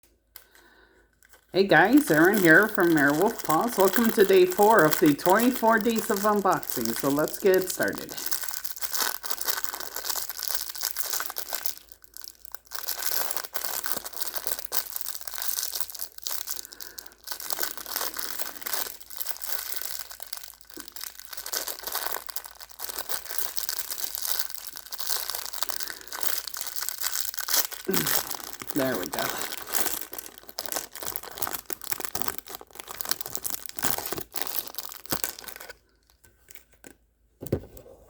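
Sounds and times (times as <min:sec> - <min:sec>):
packaging crinkling and tearing: 0:00.4 - 0:37.0.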